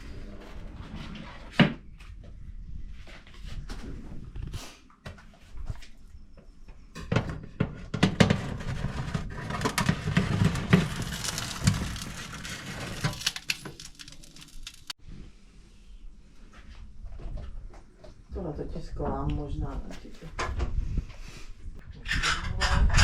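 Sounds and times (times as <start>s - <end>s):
rustling: 8.9s - 15.0s.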